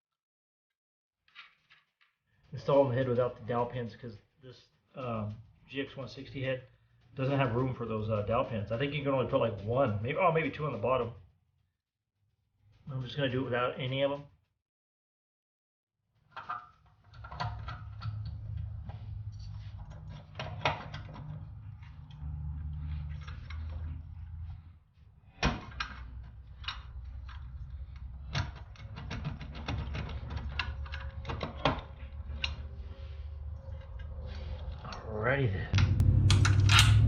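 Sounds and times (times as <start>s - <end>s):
metallic clicks of engine parts: 25.4s - 35.0s, 35.7s - 37.0s
low steady hum: 35.6s - 37.0s.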